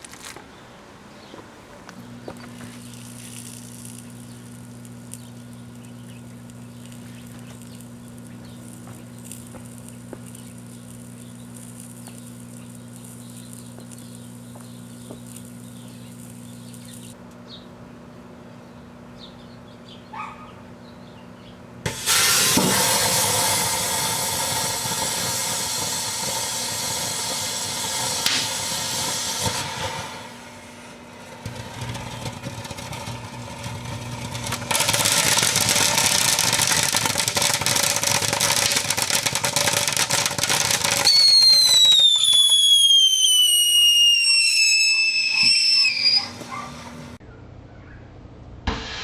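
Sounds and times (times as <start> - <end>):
fireworks hissing and crackling: 0.0 - 0.5, 1.4 - 17.2, 21.8 - 47.2, 48.7 - 49.0
descending whistle: 41.0 - 46.7.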